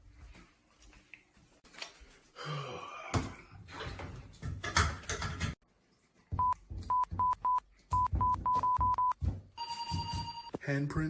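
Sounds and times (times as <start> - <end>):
knocks and rustling: 3.7 - 5.6
keypad beeps: 6.4 - 10.6.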